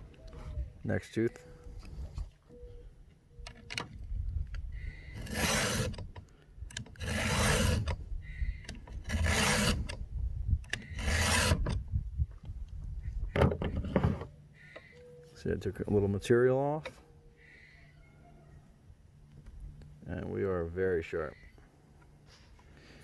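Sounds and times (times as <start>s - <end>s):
file rasping on chainsaw chain: 5.0s - 8.0s, 8.7s - 10.0s, 10.7s - 11.8s.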